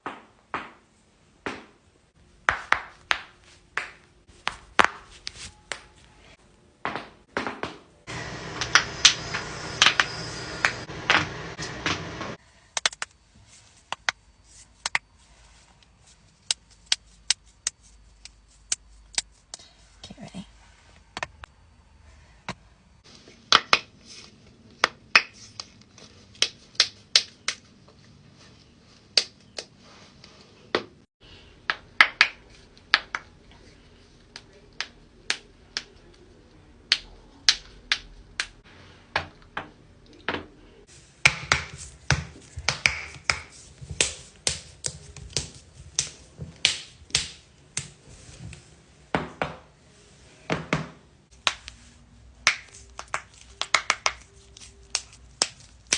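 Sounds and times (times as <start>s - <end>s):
faint background hum: 12.4s - 55.9s.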